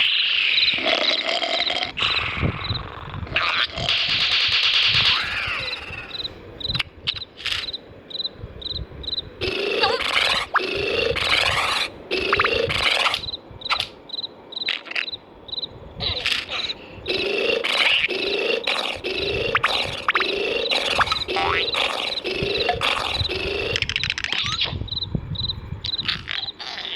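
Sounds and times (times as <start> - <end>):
squeaky sliding character noises: 0.0 - 6.4, 9.4 - 14.0, 16.0 - 24.8
cartoon sound effects: 3.4 - 6.3, 9.5 - 13.9, 18.7 - 24.8.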